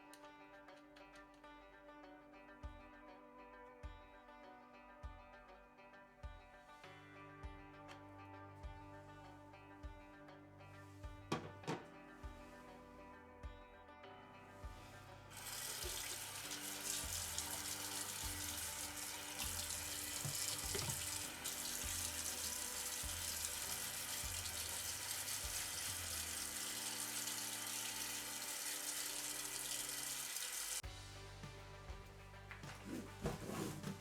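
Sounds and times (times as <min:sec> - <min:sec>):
tap water running: 0:15.3 - 0:34.0.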